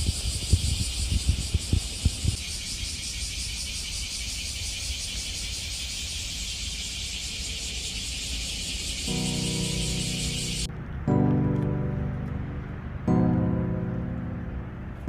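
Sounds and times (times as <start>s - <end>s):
insect chorus drone: 0.0s - 10.7s.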